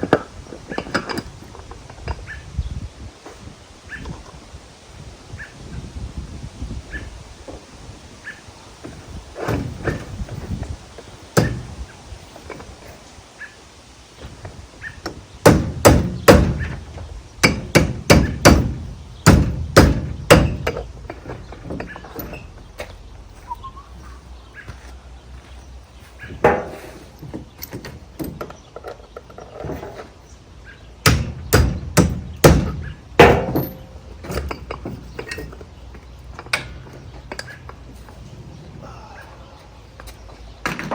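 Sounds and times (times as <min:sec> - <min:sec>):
hammer blows on metal wheel assembly: 0:15.1 - 0:20.9, 0:26.3 - 0:26.9, 0:31.0 - 0:35.6.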